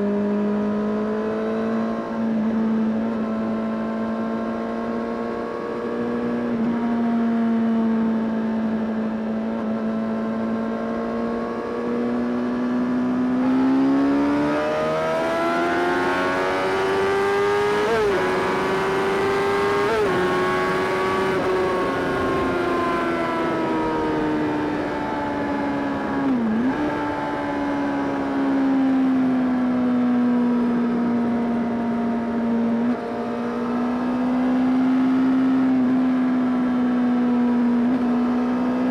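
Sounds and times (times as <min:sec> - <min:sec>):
motorcycle engine revving: 0:13.0 - 0:27.7.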